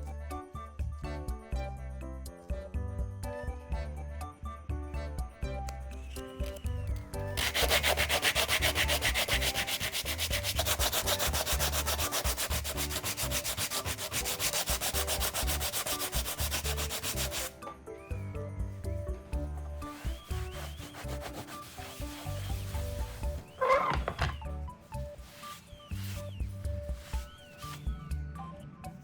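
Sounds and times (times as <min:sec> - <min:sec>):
background music: 0:00.0 - 0:29.0
sanding plastic rasp: 0:07.4 - 0:17.6, 0:19.8 - 0:27.8.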